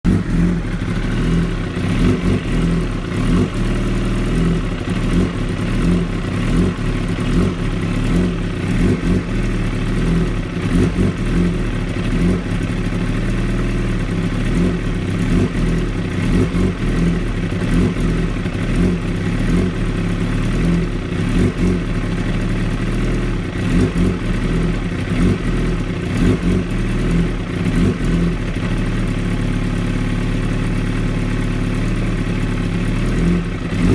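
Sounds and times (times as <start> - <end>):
motorcycle engine rough idle: 0.0 - 33.9.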